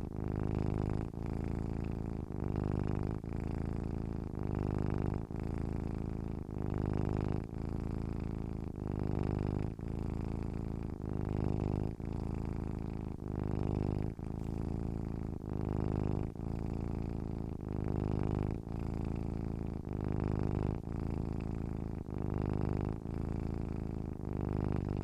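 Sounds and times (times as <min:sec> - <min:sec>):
cat purring: 0:00.0 - 0:25.0.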